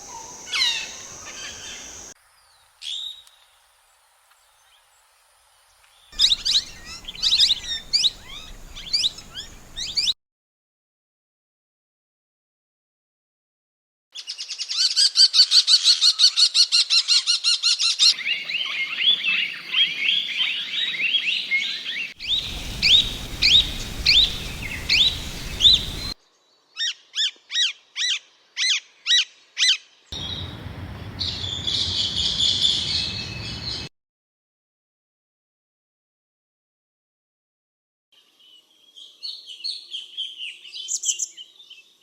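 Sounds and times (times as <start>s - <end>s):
parakeets chattering and screeching: 6.2s - 10.1s, 22.2s - 26.2s.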